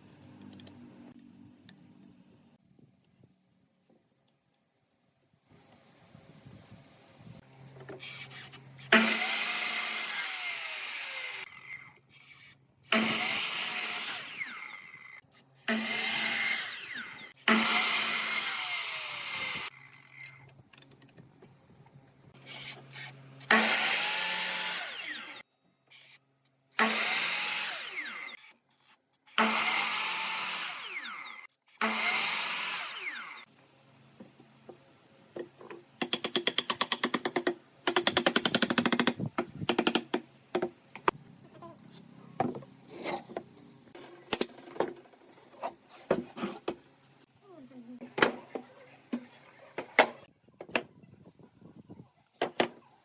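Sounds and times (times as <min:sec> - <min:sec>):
power tool cutting wood: 0:08.0 - 0:20.4, 0:22.4 - 0:25.4, 0:26.8 - 0:28.5, 0:29.3 - 0:33.5.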